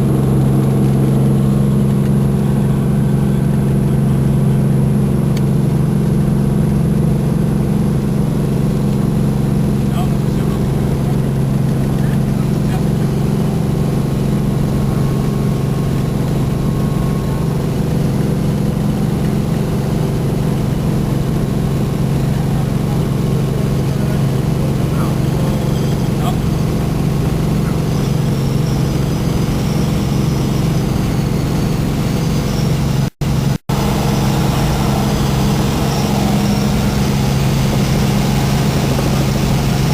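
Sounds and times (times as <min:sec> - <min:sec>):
helicopter engine and rotor drone: 0:00.0 - 0:39.9.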